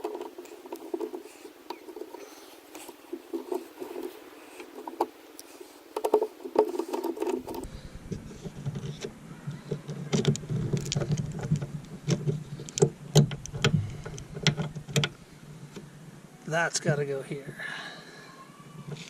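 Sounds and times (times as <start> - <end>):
steady background hum: 7.1 - 17.2.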